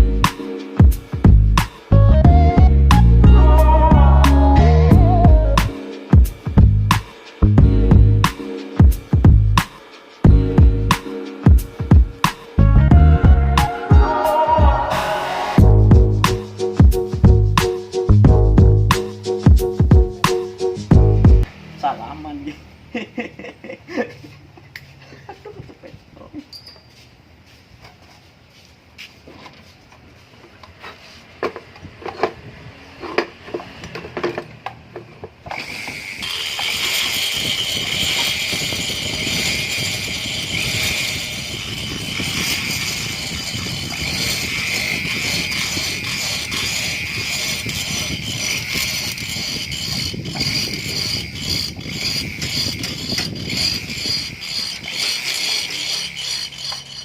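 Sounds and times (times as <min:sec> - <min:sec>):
parts clicking and knocking: 0:31.4 - 0:32.4, 0:33.0 - 0:41.4, 0:42.0 - 0:57.0
rotary grinder whining: 0:33.0 - 0:57.0.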